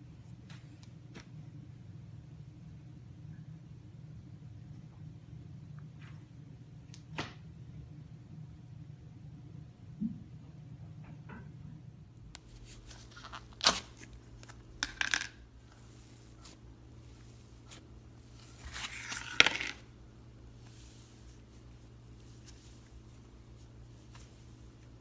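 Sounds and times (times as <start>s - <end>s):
slime crackling and tearing: 13.0s - 14.9s.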